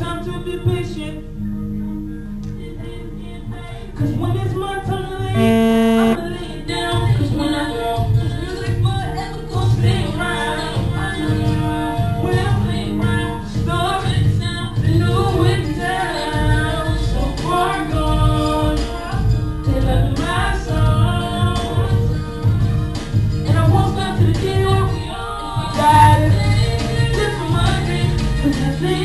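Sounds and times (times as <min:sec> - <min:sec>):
backing track with bass beat: 0:05.4 - 0:06.2
person singing lead vocal: 0:05.4 - 0:06.5, 0:19.7 - 0:29.0.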